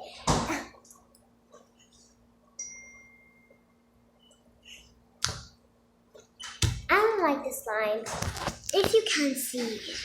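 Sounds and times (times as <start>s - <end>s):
bell-like ding: 2.6s - 3.5s.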